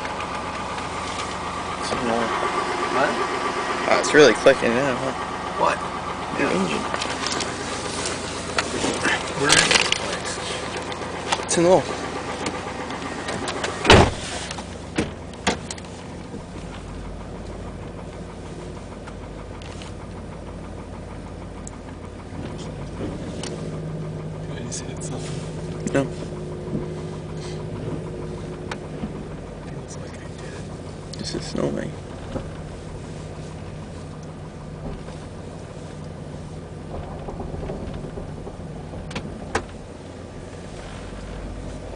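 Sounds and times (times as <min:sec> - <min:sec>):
engine humming inside cabin: 0:00.0 - 0:41.9
engine knocking: 0:00.0 - 0:41.9
loud thump: 0:13.8 - 0:15.6, 0:36.9 - 0:39.9.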